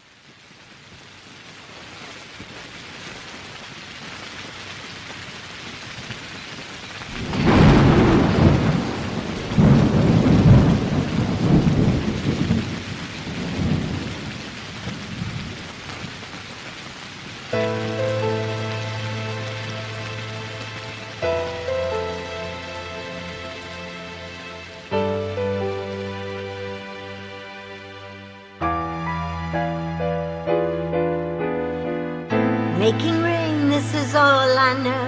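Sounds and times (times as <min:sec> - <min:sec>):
steady rain: 0:00.0 - 0:35.0
rolling thunder rumbles: 0:07.1 - 0:16.2, 0:17.5 - 0:27.4
thunderclap: 0:07.1 - 0:16.2, 0:17.5 - 0:27.0.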